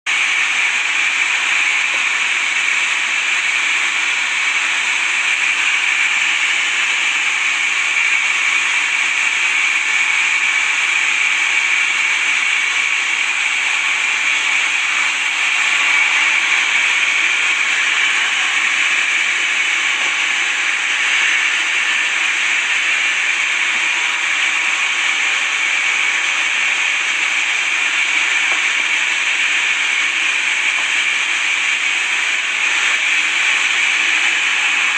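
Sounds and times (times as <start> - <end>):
saw cutting through wood: 0.1 - 34.9.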